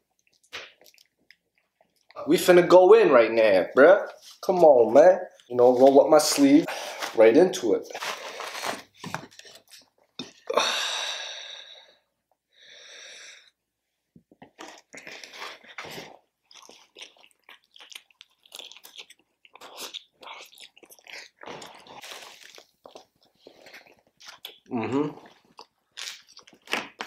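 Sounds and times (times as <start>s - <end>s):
person chewing food: 0.0s - 2.2s, 8.0s - 10.6s, 14.3s - 27.0s.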